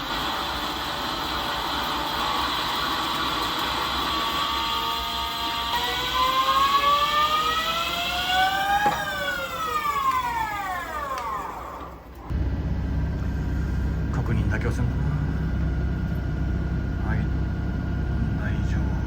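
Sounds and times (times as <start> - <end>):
lathe spindle whining: 0.0 - 19.0
low steady rumble: 12.3 - 19.0.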